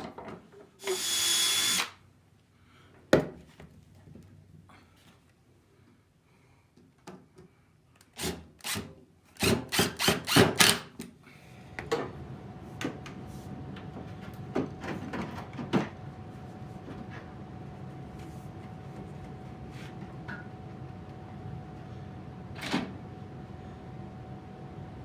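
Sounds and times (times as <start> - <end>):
low hum with high whine: 10.9 - 25.0.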